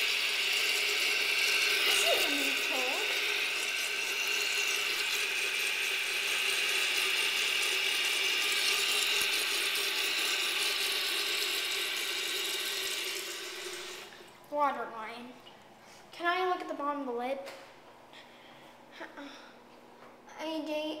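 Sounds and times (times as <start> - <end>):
toilet tank refilling: 0.0 - 14.6.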